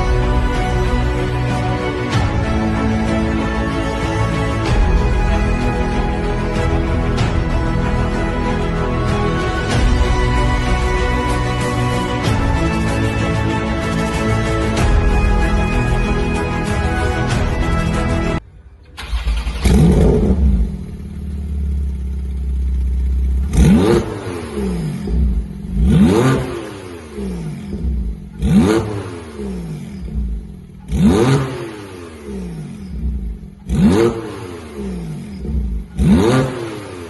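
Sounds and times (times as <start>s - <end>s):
background music: 0.0s - 21.8s, 23.4s - 37.0s
car engine revving: 18.8s - 37.0s.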